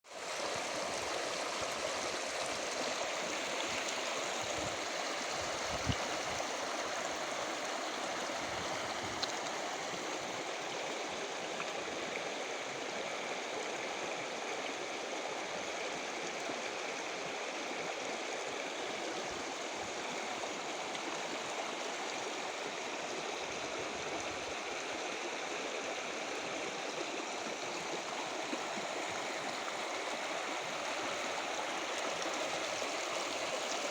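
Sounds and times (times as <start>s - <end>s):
river water rushing over rocks: 24.8s - 33.9s.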